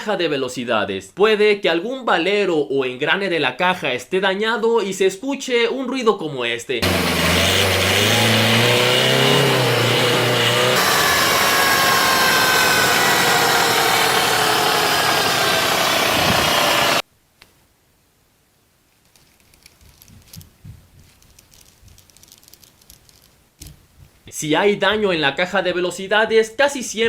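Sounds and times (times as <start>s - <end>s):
car engine and gearbox running: 6.8s - 17.0s
gearbox whining: 6.8s - 17.0s.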